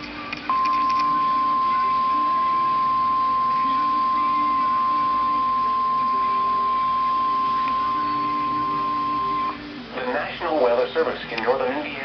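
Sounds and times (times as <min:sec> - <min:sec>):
high alarm beep from radio: 0:00.5 - 0:09.6.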